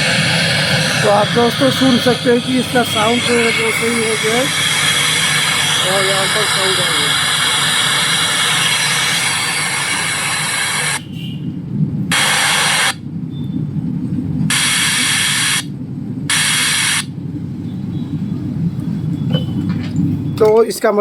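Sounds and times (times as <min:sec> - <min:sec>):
speakers hissing static: 0:00.0 - 0:11.3, 0:12.1 - 0:13.0, 0:14.5 - 0:15.7, 0:16.3 - 0:17.2
steady low rumble: 0:00.0 - 0:20.4.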